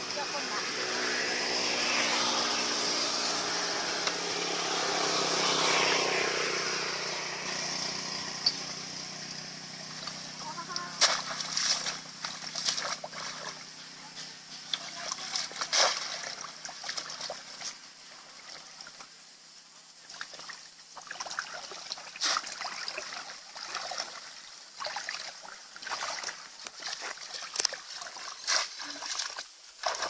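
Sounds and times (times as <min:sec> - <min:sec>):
shallow water splashing: 0:08.6 - 0:19.2, 0:20.0 - 0:30.0.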